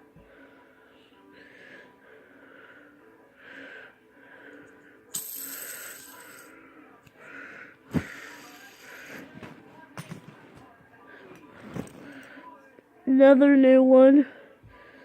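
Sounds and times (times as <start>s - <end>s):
fidget spinner whirring: 8.2s - 9.2s.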